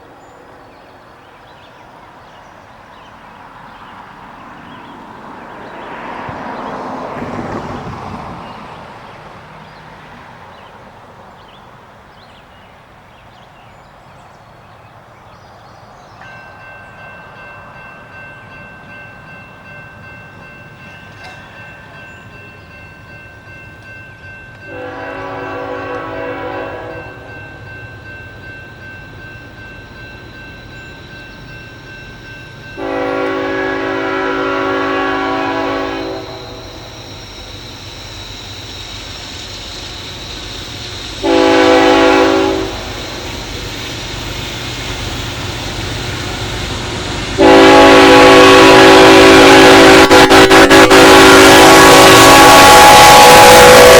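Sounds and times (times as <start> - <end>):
diesel locomotives rumbling: 0.0 - 53.9
locomotive air horn blasts: 24.7 - 27.3, 32.8 - 37.0, 41.2 - 43.2, 46.5 - 53.9
steady high tone: 26.9 - 48.7.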